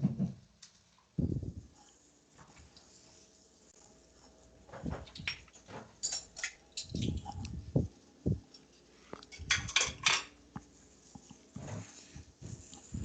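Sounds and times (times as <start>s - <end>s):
dishes and cutlery clattering: 4.9s - 7.4s, 9.3s - 10.4s.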